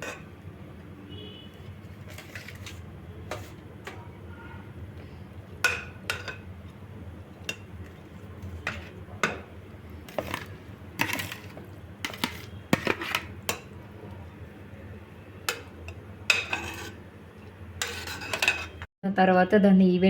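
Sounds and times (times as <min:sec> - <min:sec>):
spoon clinking and scraping pot: 0:00.0 - 0:00.3, 0:01.9 - 0:04.1, 0:05.6 - 0:06.5, 0:08.6 - 0:09.5, 0:10.1 - 0:13.8, 0:15.5 - 0:18.9.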